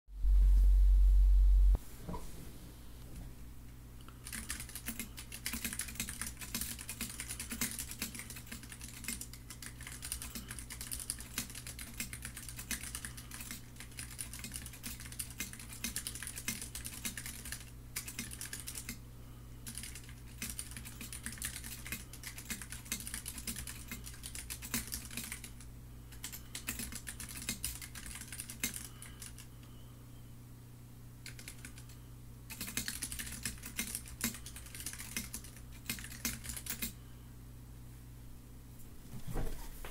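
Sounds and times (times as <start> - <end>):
mechanical keyboard typing: 4.2 - 19.0, 19.6 - 29.5, 31.2 - 31.9, 32.5 - 37.0.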